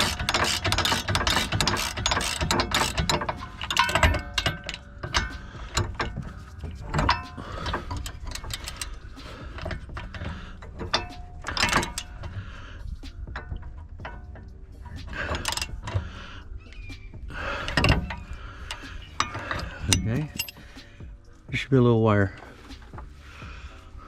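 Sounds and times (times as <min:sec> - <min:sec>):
loud metal clanks: 0:00.0 - 0:12.4
metal parts clinking and knocking: 0:00.0 - 0:20.8.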